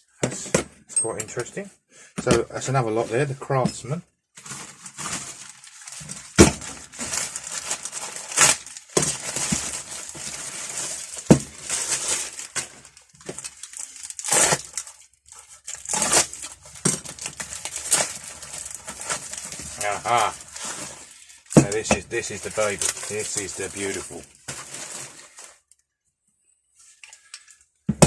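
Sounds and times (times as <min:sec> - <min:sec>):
packaging crinkling and tearing: 0:04.4 - 0:25.8.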